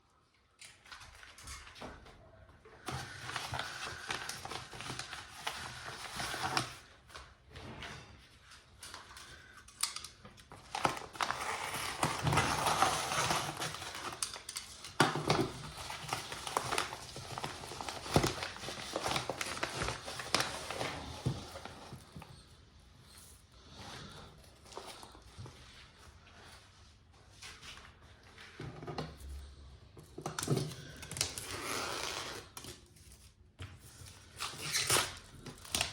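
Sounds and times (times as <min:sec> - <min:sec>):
packaging rustling and crinkling: 0:02.8 - 0:07.4, 0:08.5 - 0:22.5.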